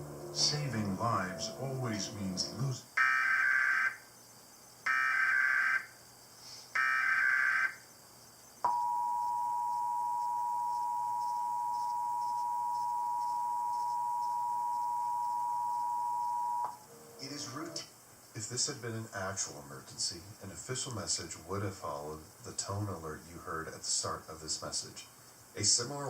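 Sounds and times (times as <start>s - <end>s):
screechy digital data bursts: 0.5s - 6.0s, 6.8s - 8.0s
steady two-tone attention signal: 8.7s - 17.8s.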